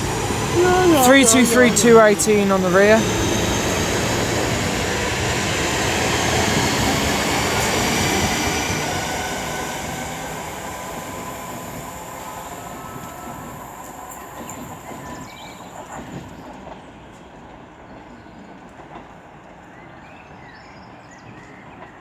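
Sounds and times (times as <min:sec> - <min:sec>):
electric train pulling away: 0:00.0 - 0:16.4.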